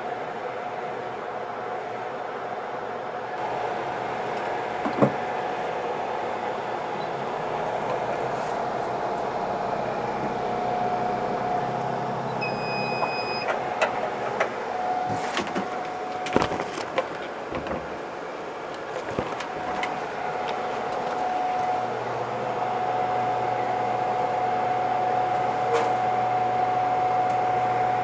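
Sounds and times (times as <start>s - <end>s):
machine blower and fans humming: 0.0s - 28.0s
electronic beep: 12.4s - 13.5s.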